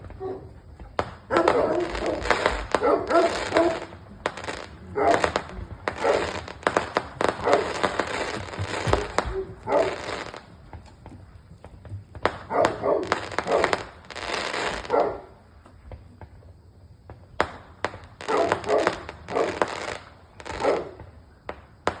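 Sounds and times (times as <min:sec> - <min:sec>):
fireworks popping: 0:00.0 - 0:15.0, 0:15.6 - 0:22.0
dog barking: 0:00.1 - 0:00.6, 0:01.3 - 0:03.9, 0:04.9 - 0:05.4, 0:06.0 - 0:06.4, 0:07.4 - 0:07.8, 0:08.8 - 0:10.2, 0:12.5 - 0:13.8, 0:14.8 - 0:15.4, 0:18.3 - 0:19.6, 0:20.5 - 0:21.0.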